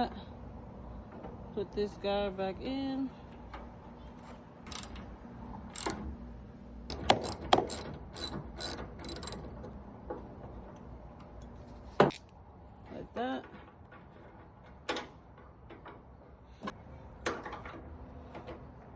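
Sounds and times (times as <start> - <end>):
ratchet wrench clicking: 4.6 - 5.0, 5.7 - 6.0, 6.9 - 9.4.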